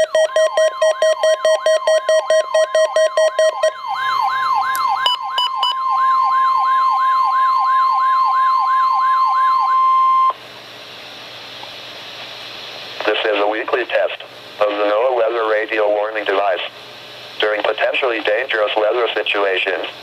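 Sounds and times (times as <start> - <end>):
repeating beep: 0.0 - 3.8, 5.0 - 5.9
steady alarm tone: 0.0 - 10.4
falling siren-like sweep: 3.7 - 10.3
faint radio hiss: 10.4 - 20.0.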